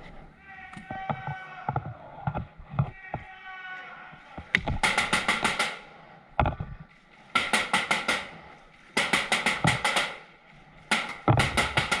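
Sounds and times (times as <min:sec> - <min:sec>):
paintball markers firing: 0:04.4 - 0:05.8, 0:09.0 - 0:10.3, 0:10.9 - 0:12.0.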